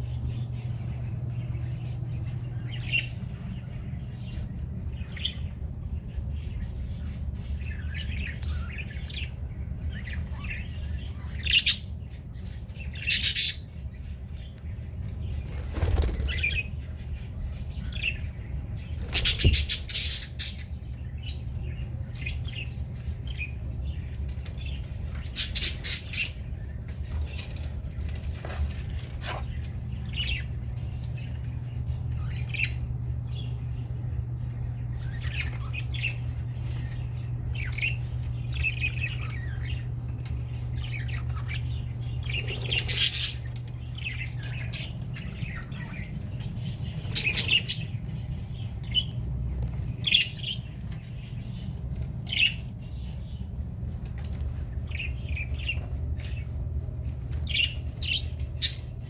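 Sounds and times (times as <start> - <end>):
steady low hum: 0.0 - 59.0
budgerigars chirping: 0.3 - 59.0
wing flapping: 15.4 - 16.5.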